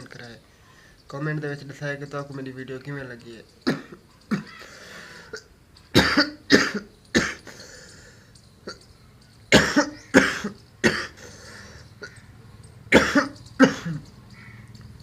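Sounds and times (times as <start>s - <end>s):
man coughing harshly: 3.7s - 4.6s, 6.0s - 7.5s, 9.5s - 11.2s, 12.9s - 14.0s.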